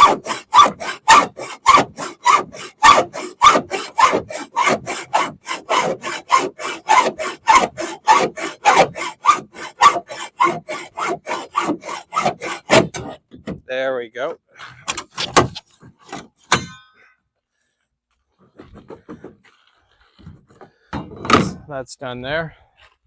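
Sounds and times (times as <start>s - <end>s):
hand saw cutting metal: 0.0s - 13.2s, 14.9s - 15.6s.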